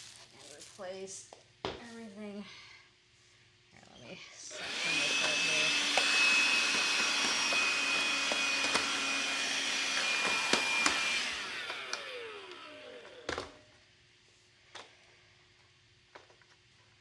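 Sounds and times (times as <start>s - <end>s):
vacuum cleaner whining: 4.5s - 13.8s
vacuum cleaner clicks: 4.6s - 13.6s.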